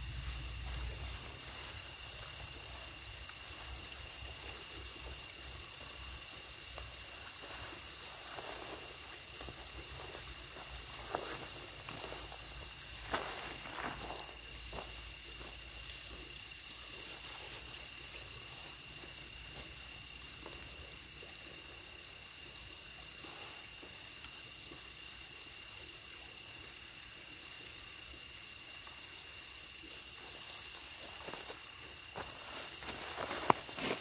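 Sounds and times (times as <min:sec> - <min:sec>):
faint hiss: 0:00.0 - 0:34.0
faint ticks: 0:00.1 - 0:34.0.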